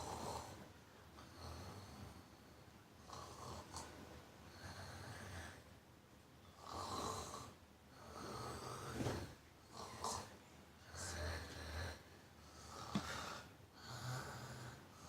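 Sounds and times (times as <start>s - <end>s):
person snoring: 6.6s - 15.0s.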